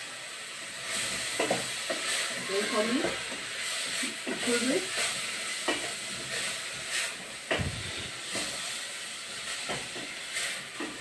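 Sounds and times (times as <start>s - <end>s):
paste sizzling in hot oil: 0.0s - 11.0s.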